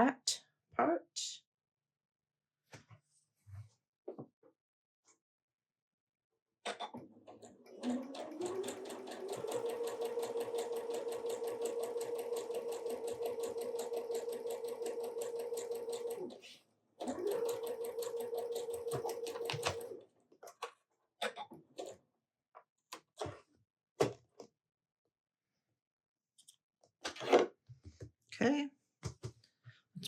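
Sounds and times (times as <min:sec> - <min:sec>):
electric sewing machine stitching: 0:07.3 - 0:20.0.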